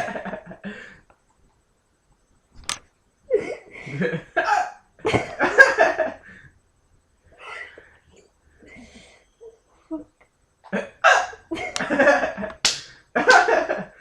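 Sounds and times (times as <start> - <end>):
person hiccupping: 10.7 - 11.5.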